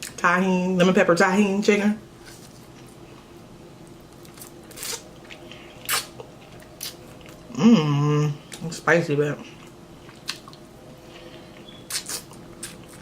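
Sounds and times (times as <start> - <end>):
chewing mouth clicks and smacks: 9.6 - 10.7, 11.5 - 13.0.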